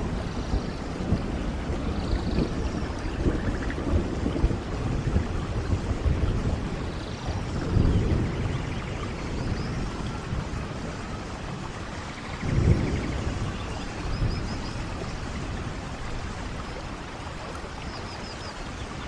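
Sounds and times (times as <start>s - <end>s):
thunder rumbling: 0.0s - 17.8s
steady rain: 0.0s - 19.0s.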